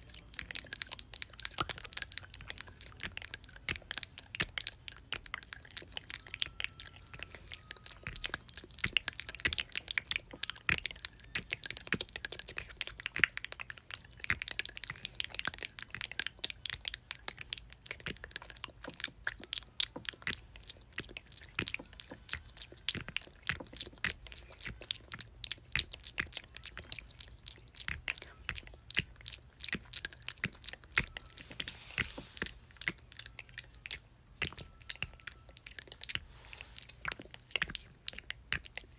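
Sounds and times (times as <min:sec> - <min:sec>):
wet mouth clicks and smacks: 0:00.0 - 0:38.9.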